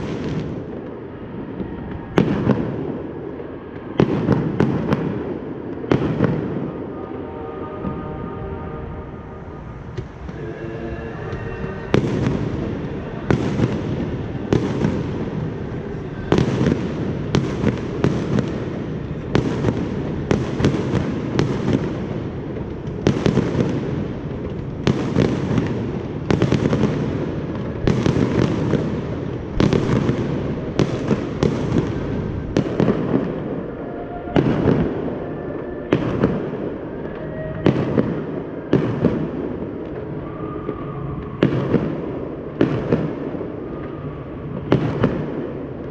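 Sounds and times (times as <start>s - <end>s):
continuous fireworks rumble: 0.0s - 45.9s.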